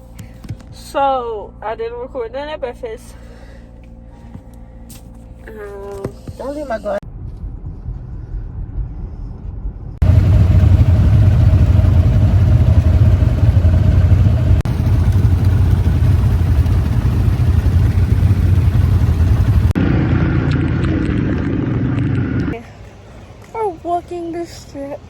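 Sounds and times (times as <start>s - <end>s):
vehicle road and wind rumble: 6.4s - 23.4s.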